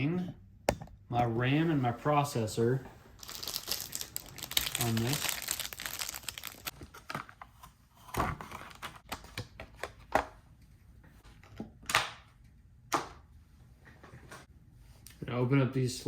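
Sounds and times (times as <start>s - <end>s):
packaging rustling: 3.0s - 7.4s.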